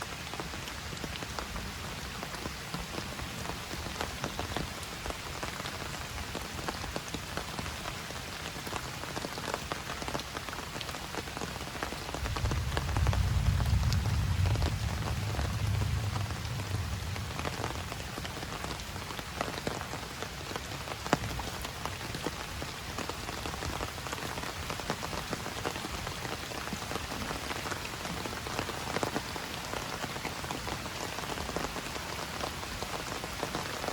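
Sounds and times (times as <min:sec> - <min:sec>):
steady rain falling: 0:00.0 - 0:33.9
low rumble: 0:12.5 - 0:17.9.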